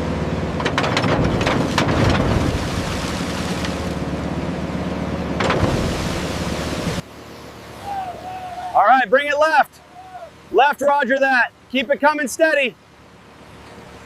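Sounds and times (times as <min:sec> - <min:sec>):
wind: 0:00.0 - 0:14.0
water noise: 0:01.0 - 0:10.7.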